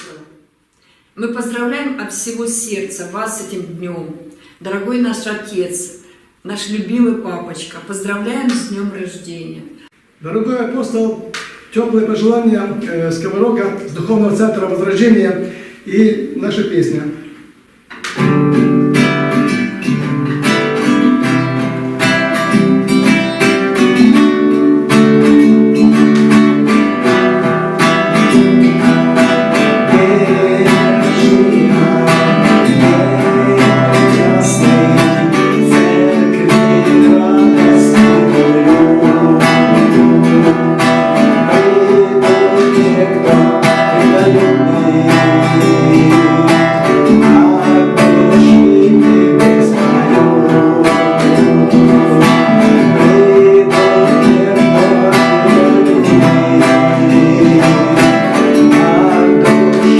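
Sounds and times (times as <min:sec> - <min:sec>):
acoustic guitar strumming: 0:00.0 - 0:10.0, 0:17.2 - 0:59.9
person singing: 0:23.9 - 0:59.9.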